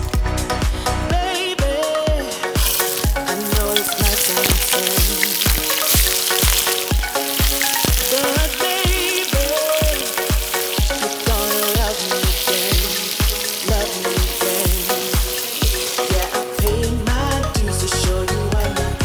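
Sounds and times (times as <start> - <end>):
background music with beat: 0.0 - 19.0
food sizzling in oil: 2.4 - 17.6.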